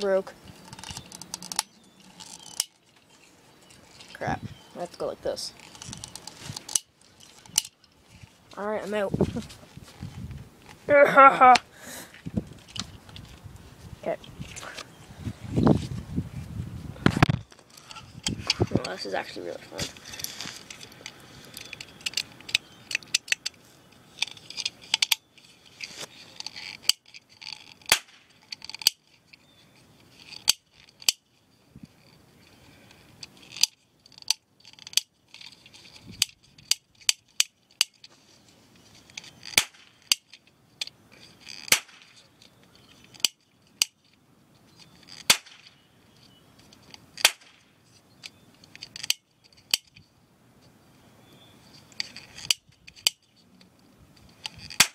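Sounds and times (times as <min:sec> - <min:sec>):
cap gun pops: 0:41.7 - 0:42.1, 0:45.3 - 0:45.6.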